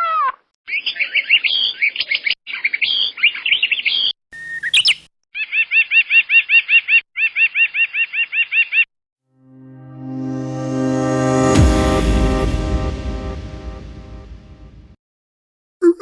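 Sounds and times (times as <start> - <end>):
repeated bird chirp: 0.7 - 8.9
electronic music: 9.4 - 15.0.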